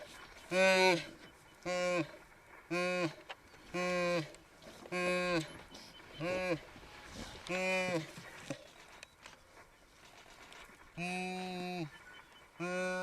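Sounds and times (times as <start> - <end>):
short flat animal-like calls: 0.4 - 8.3.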